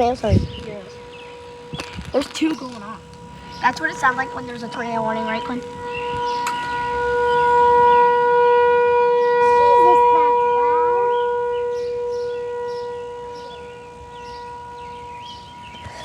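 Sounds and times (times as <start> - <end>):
tornado sirens steady tone: 0.0 - 16.0.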